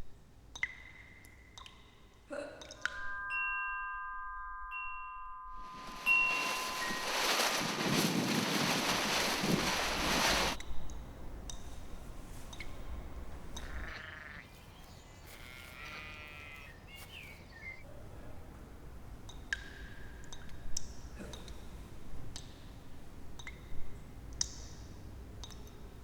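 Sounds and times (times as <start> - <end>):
sheep bleating: 13.6 - 14.6, 15.2 - 16.8.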